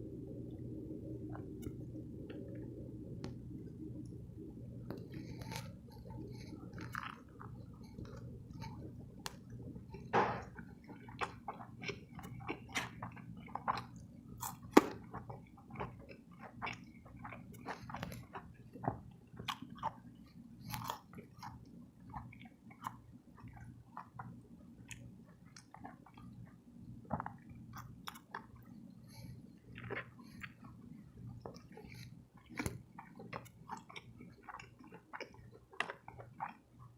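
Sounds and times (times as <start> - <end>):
steady low hum: 0.0 - 36.9
person chewing: 4.8 - 36.8.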